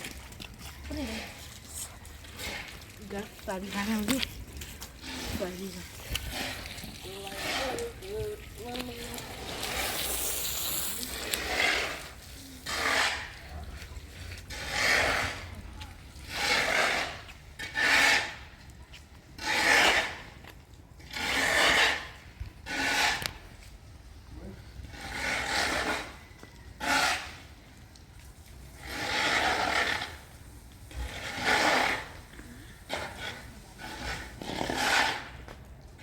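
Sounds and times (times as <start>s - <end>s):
rasping strokes on wood: 2.2s - 13.6s, 16.3s - 18.4s, 21.1s - 23.4s, 24.8s - 26.2s, 26.8s - 27.4s, 32.9s - 35.3s.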